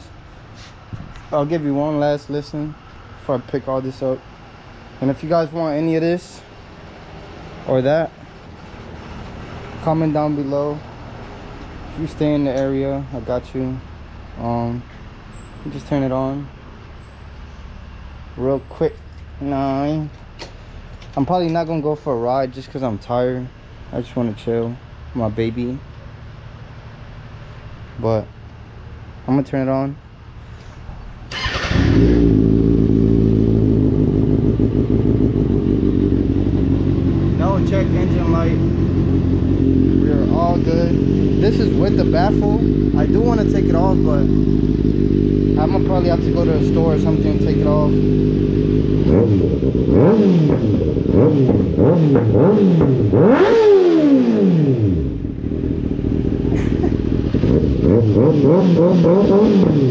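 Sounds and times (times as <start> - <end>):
motorcycle engine starting and idling: 31.2 - 59.9.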